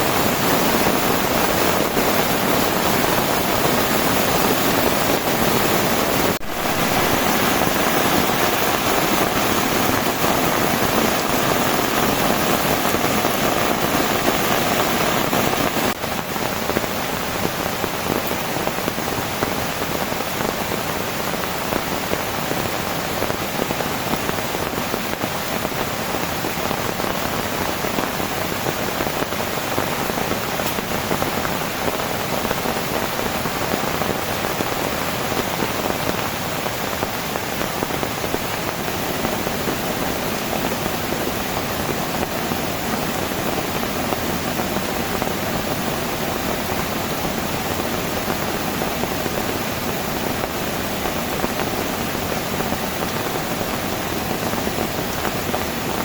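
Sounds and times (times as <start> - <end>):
heavy rain falling: 0.0 - 56.0.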